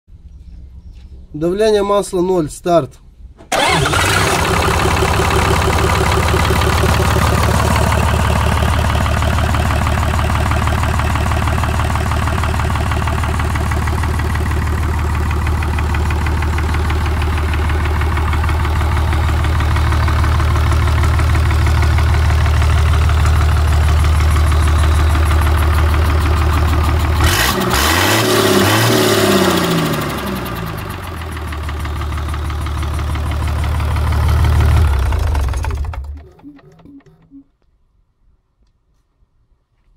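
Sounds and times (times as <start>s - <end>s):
diesel engine running: 3.3s - 37.4s.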